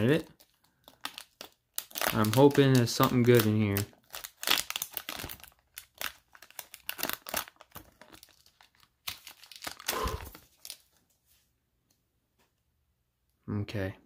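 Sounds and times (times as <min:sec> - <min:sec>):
foil wrapper crinkling and tearing: 0:00.0 - 0:11.0.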